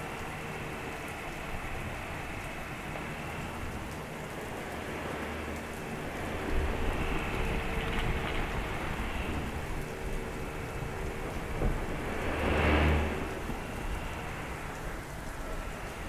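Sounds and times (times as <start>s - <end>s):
heavy rain falling: 0.0s - 16.0s
thunder rumbling: 5.2s - 16.0s.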